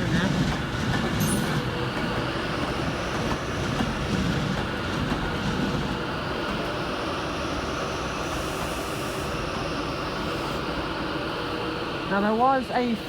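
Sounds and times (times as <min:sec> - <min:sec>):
train wheels clattering on rails: 0:00.0 - 0:08.8.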